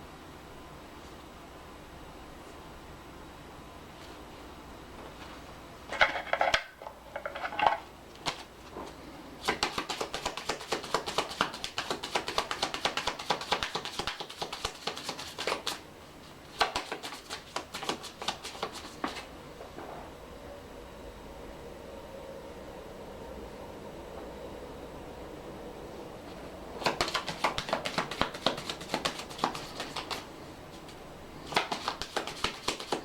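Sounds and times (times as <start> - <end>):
cards being shuffled: 8.2 - 8.5, 9.4 - 19.3, 26.8 - 33.0.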